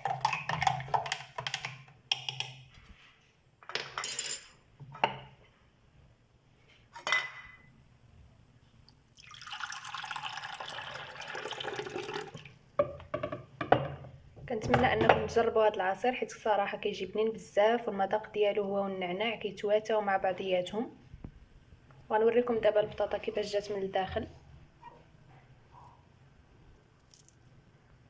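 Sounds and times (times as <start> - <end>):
spoon stirring in glass jug: 0.0 - 2.6
juice pouring into a glass: 8.9 - 12.5.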